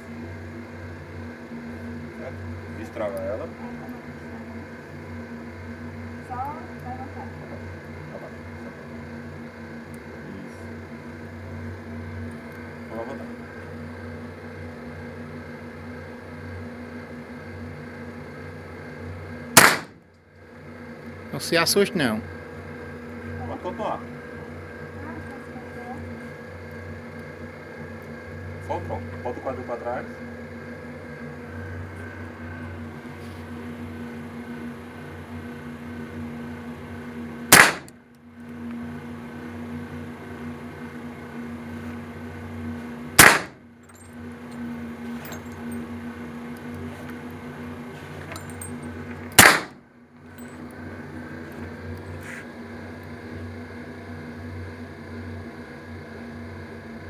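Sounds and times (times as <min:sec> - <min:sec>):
steady low hum: 0:00.0 - 0:57.0
shotgun shot: 0:19.6 - 0:20.0, 0:37.5 - 0:37.9, 0:43.2 - 0:43.6, 0:49.4 - 0:49.8.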